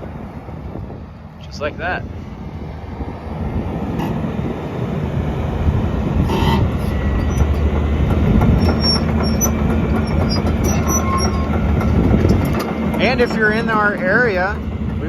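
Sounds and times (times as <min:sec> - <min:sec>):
excavator diesel engine under load: 0:00.0 - 0:15.0
machine clicks and knocks: 0:07.0 - 0:15.0.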